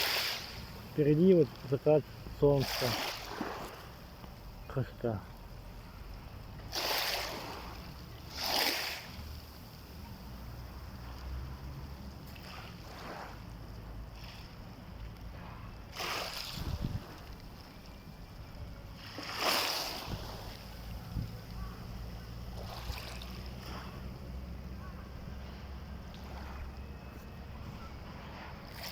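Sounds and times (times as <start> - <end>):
small waves washing ashore: 0.0 - 28.9
steady low rumble: 20.0 - 28.9.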